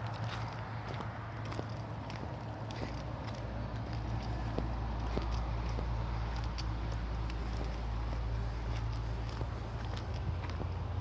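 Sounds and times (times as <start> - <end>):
footsteps on a road: 0.0 - 11.0
steady low rumble: 0.0 - 11.0.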